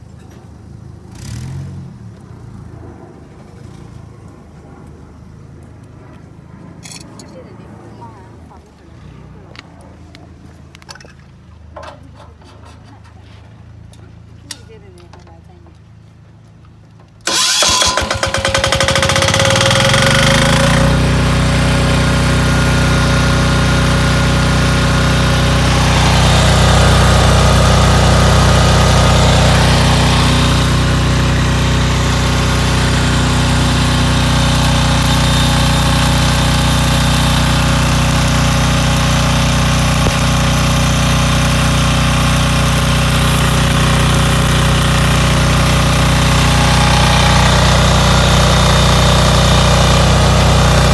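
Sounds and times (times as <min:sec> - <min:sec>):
welding generator engine running: 0:17.2 - 0:50.9.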